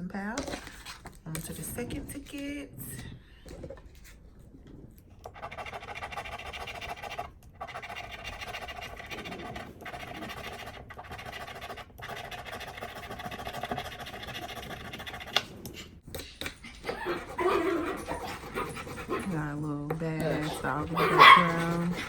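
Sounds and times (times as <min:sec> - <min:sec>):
scratch-off ticket scraping: 0:05.3 - 0:15.8, 0:16.9 - 0:22.0.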